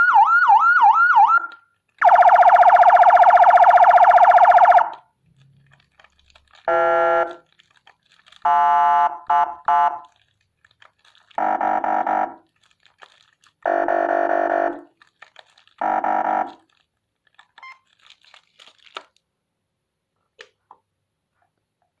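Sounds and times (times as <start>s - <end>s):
electronic siren horn blasts: 8.5s - 10.0s, 11.4s - 12.4s, 13.7s - 14.9s, 15.8s - 16.6s.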